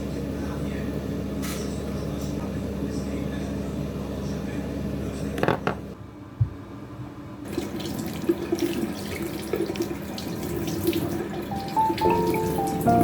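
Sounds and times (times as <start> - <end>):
tap water splashing into sink: 7.5 - 12.6
music: 11.5 - 13.0.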